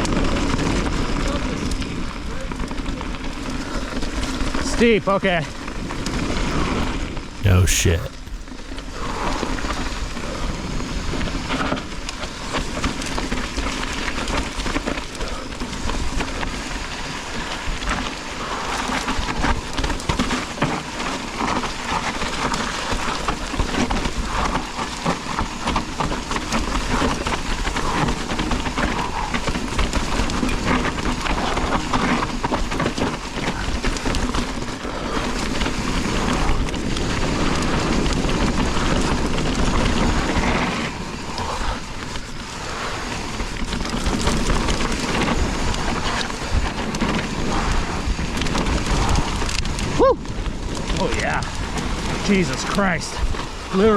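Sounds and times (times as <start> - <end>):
wind: 38.6 - 53.9
rain: 42.1 - 52.2, 53.2 - 53.8.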